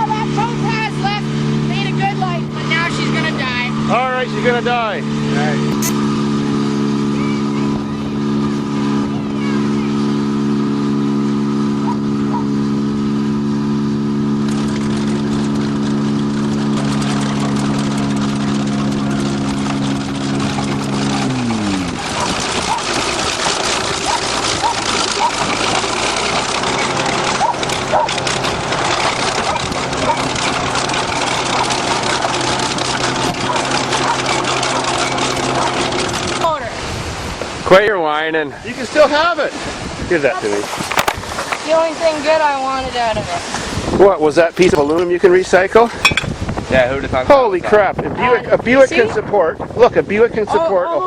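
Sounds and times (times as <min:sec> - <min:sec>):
engine running steadily: 0:00.0 - 0:51.0
bulldozer crushing a car: 0:14.5 - 0:36.5
car crunching being crushed: 0:40.8 - 0:41.6.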